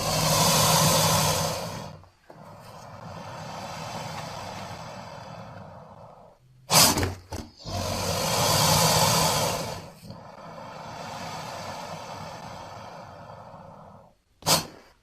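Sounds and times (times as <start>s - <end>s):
cartoon monster roar: 0.0s - 12.8s
steady background hiss: 0.0s - 15.0s.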